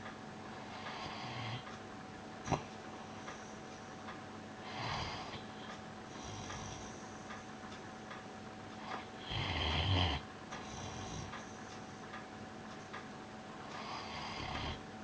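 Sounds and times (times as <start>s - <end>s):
pet snoring: 0.6s - 1.6s, 4.6s - 7.0s, 8.8s - 11.3s, 13.7s - 14.8s.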